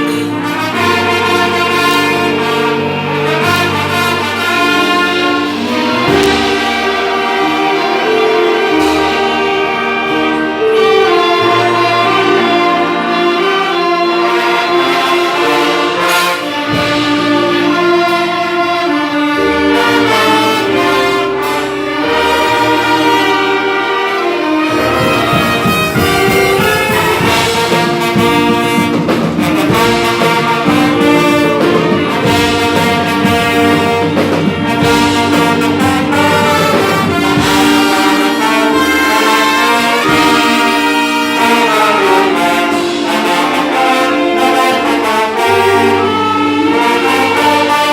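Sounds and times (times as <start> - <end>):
brass-led orchestra playing: 0.0 - 47.9.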